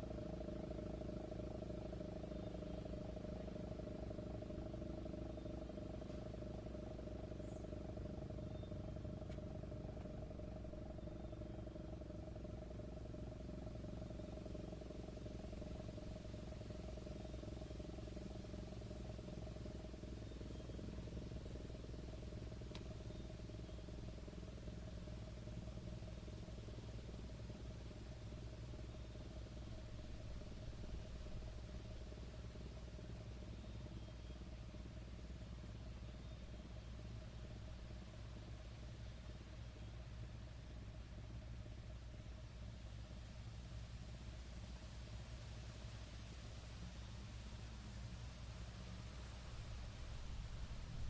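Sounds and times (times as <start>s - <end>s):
fluttering warning siren: 0.0s - 42.0s
low engine hum: 0.0s - 51.0s
faint tick: 9.2s - 10.2s, 22.6s - 23.0s.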